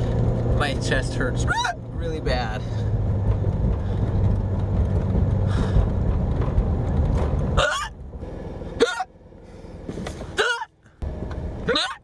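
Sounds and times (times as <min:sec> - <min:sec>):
low vehicle hum: 0:00.0 - 0:12.0
person hiccuping: 0:07.6 - 0:07.9, 0:08.8 - 0:09.1, 0:10.4 - 0:10.7, 0:11.7 - 0:12.0.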